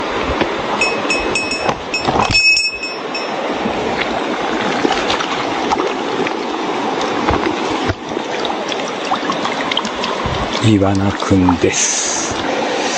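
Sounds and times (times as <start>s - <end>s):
stream rushing over rocks: 0.0s - 12.9s
short high pure notes: 0.8s - 3.4s.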